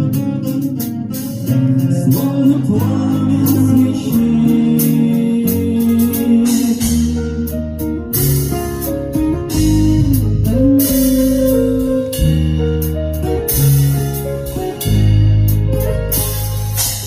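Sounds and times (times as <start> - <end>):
man singing: 0.0 - 7.6
light percussion: 5.6 - 17.0.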